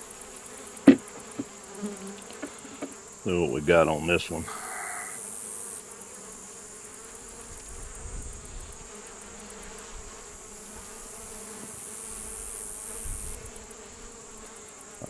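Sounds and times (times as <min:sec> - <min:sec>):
bees buzzing: 0:00.0 - 0:07.6.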